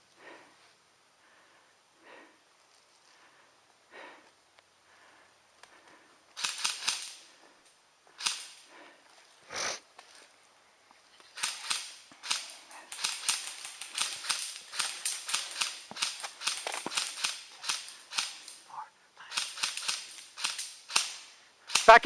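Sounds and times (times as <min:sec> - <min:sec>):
airsoft guns firing: 0:06.4 - 0:07.2, 0:11.4 - 0:18.6, 0:19.3 - 0:22.0.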